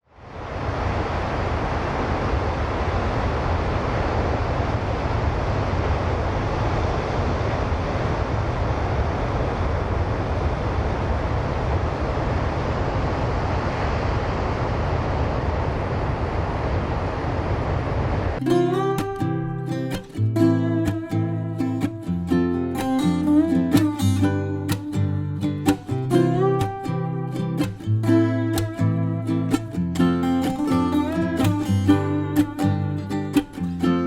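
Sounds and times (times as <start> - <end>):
ocean surf: 0.1 - 34.0
wind noise on microphone: 0.2 - 18.4
acoustic guitar music: 18.4 - 34.0.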